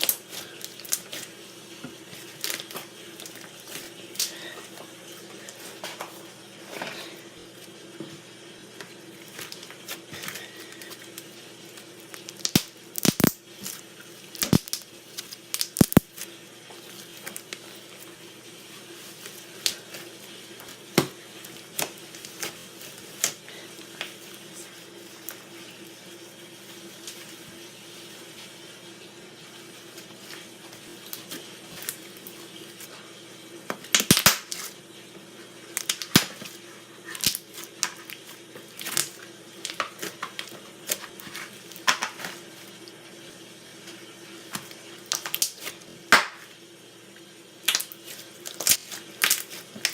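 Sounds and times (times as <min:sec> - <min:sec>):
slime squishing: 0:00.0 - 0:01.4, 0:02.1 - 0:04.7, 0:19.0 - 0:25.6, 0:35.8 - 0:42.7, 0:44.5 - 0:45.8, 0:47.6 - 0:49.9
slime popping: 0:12.3 - 0:13.4, 0:15.5 - 0:16.2.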